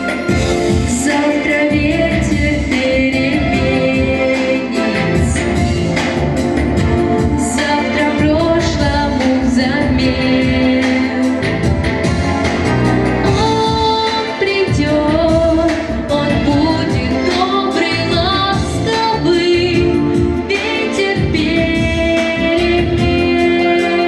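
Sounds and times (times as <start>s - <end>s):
instrumental accompaniment: 0.0s - 24.0s
young woman singing: 0.7s - 6.2s, 7.2s - 11.8s, 13.3s - 24.0s.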